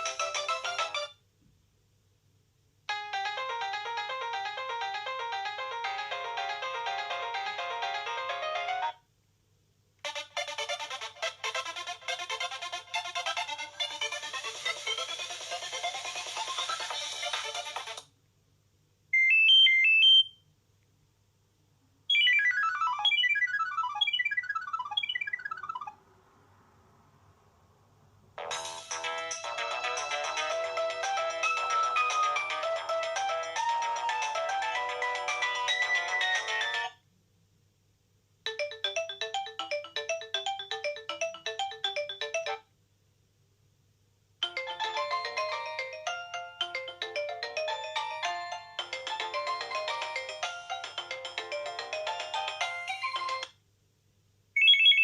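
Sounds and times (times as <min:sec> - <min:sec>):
polyphonic ringtone tune: 0:00.0 - 0:01.2, 0:02.9 - 0:09.0, 0:22.1 - 0:26.0, 0:28.5 - 0:37.0, 0:38.5 - 0:42.6, 0:44.4 - 0:53.5, 0:54.6 - 0:55.0
ringtone of falling notes: 0:00.0 - 0:01.2, 0:02.9 - 0:09.0, 0:22.1 - 0:26.0, 0:28.4 - 0:37.0, 0:38.5 - 0:42.6, 0:44.4 - 0:53.5, 0:54.6 - 0:55.0
beeping alert tone: 0:22.1 - 0:25.8.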